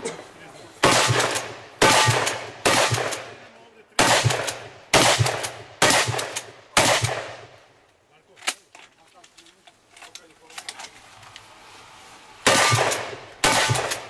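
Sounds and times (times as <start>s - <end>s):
shotgun shots echoing: 0.8s - 7.6s, 12.4s - 14.0s.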